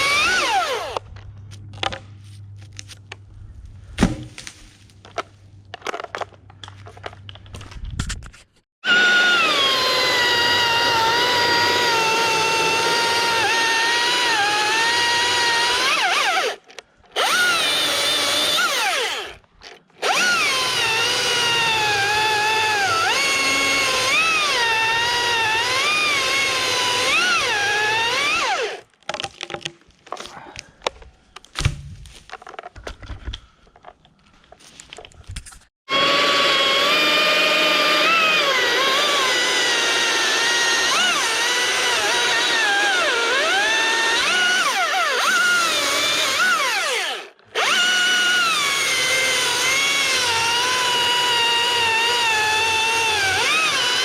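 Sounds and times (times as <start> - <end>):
electric chainsaw whining: 0.0 - 1.0, 8.8 - 16.6, 17.2 - 19.4, 20.0 - 28.8, 35.9 - 54.0.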